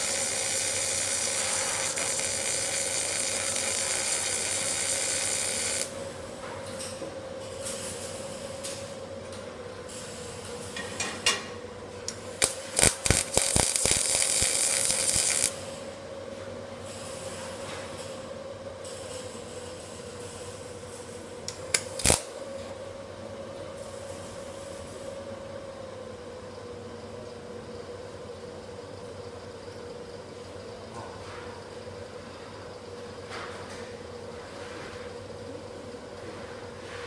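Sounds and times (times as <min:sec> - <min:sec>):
welding machine humming: 0:00.0 - 0:06.4, 0:07.4 - 0:09.1, 0:09.9 - 0:11.3, 0:11.9 - 0:16.0, 0:16.8 - 0:22.9, 0:23.8 - 0:25.2.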